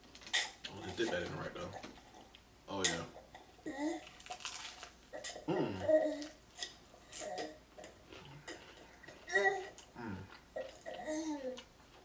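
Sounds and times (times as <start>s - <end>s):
toddler babbling: 3.6s - 4.0s, 9.3s - 9.8s, 10.9s - 11.6s.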